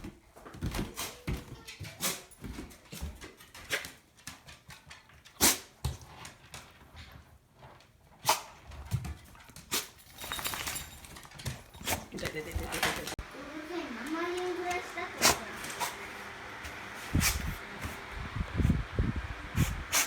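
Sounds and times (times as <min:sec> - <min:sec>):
puppy sneezing: 0:02.0 - 0:02.3, 0:05.4 - 0:05.7, 0:08.2 - 0:08.6, 0:15.2 - 0:16.0.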